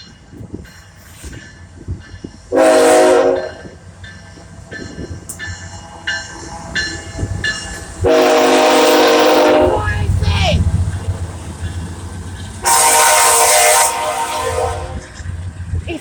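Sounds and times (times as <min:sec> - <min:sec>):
locomotive bell ringing: 0:00.0 - 0:15.4
passing train rumble: 0:00.0 - 0:16.0
locomotive air horn blasts: 0:02.5 - 0:03.7, 0:08.0 - 0:09.9, 0:12.6 - 0:15.2.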